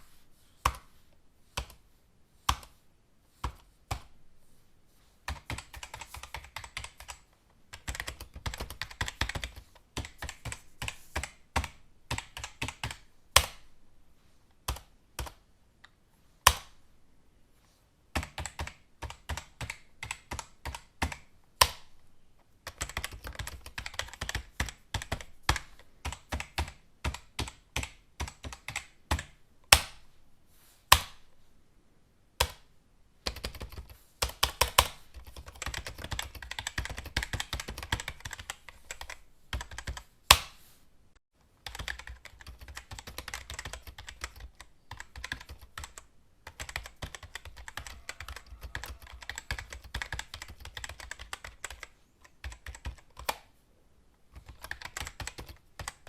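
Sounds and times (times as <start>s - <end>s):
keyboard typing: 5.3s - 13.7s, 18.2s - 21.9s, 22.6s - 29.9s, 32.4s - 40.1s, 41.6s - 53.5s, 54.4s - 56.0s.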